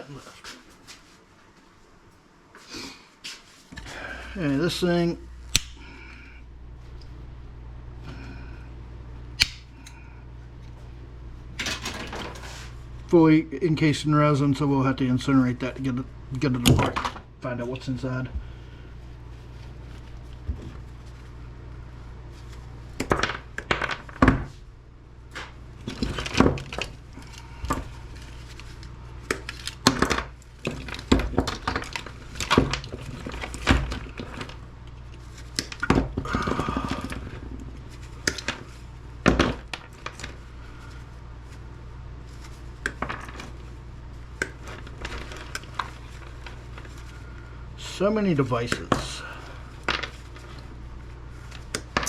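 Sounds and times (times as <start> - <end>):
steady low hum: 0.0 - 52.0
hard parts clattering and dropping: 11.6 - 12.5.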